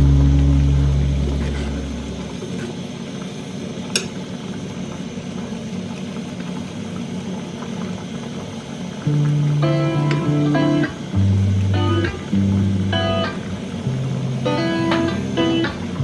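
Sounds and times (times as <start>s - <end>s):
vehicle engine rumbling: 0.0s - 2.8s.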